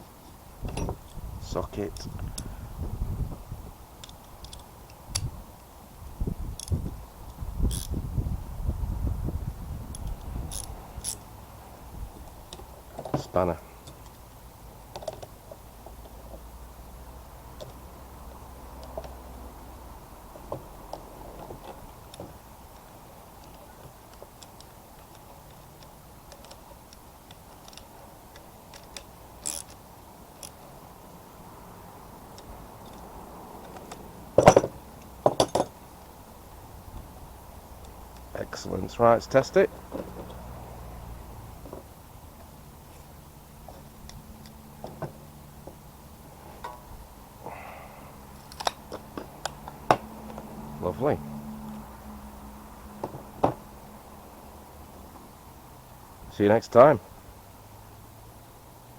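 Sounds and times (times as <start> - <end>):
rustle: 0.0 - 58.9
socket and spanner clicking: 6.6 - 6.8.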